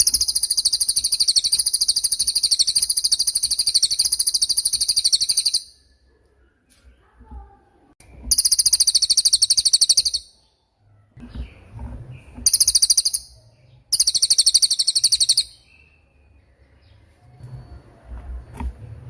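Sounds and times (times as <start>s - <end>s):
songbird rapid high trills: 0.0s - 5.8s, 13.9s - 15.5s.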